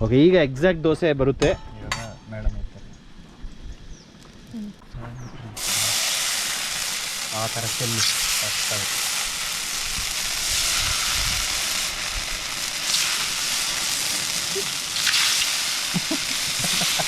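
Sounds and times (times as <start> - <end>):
batter sizzling on hot pan: 5.6 - 17.0.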